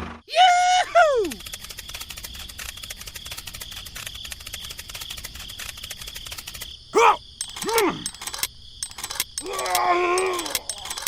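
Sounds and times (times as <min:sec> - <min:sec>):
insects chirping: 0:00.3 - 0:11.0
rising and falling voice-like calls: 0:07.0 - 0:08.0.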